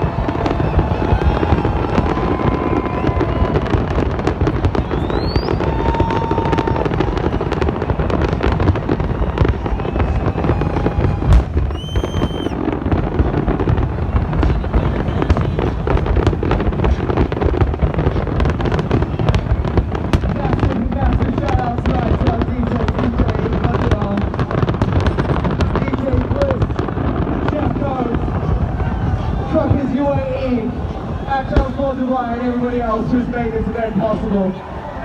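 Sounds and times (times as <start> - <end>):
rising firework whistle: 0.0 - 15.7
fireworks bangs and crackling: 0.0 - 35.0
sharp firework bang: 11.1 - 17.0.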